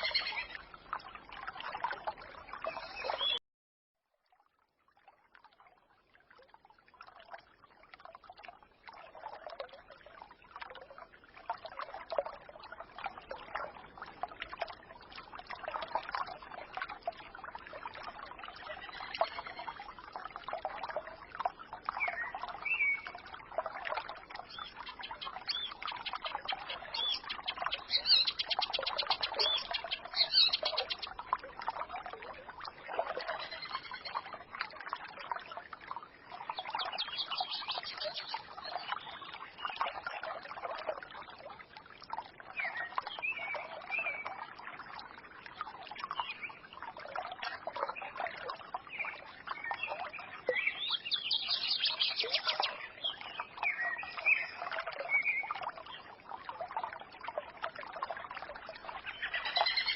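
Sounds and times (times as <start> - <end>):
songbirds chirping and trilling: 0.0 - 0.7, 2.0 - 3.4, 18.6 - 19.8, 24.4 - 31.4, 33.2 - 34.4, 36.4 - 40.2, 47.4 - 56.1, 58.9 - 59.9
stream babbling: 0.0 - 3.4, 5.4 - 59.9.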